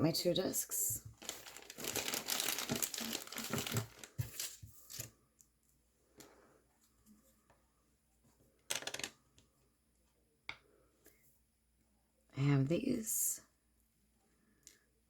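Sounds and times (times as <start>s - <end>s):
plastic crinkling and rustling: 1.0s - 5.2s.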